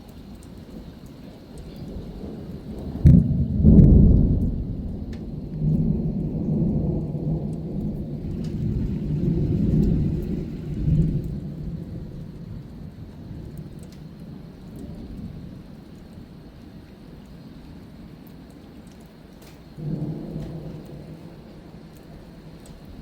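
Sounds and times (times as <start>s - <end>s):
low rolling thunder rumble: 0.0s - 18.3s, 19.5s - 23.0s
thunder crack: 1.9s - 13.5s, 19.8s - 23.0s.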